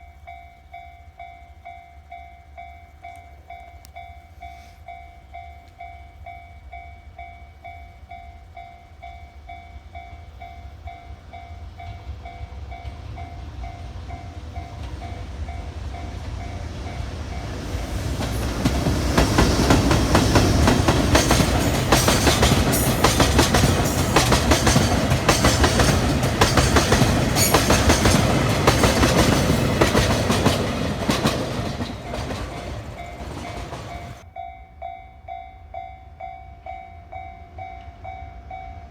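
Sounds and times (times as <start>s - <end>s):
crossing warning bell ringing: 0.0s - 38.9s
freight train wheels clattering: 12.0s - 34.2s.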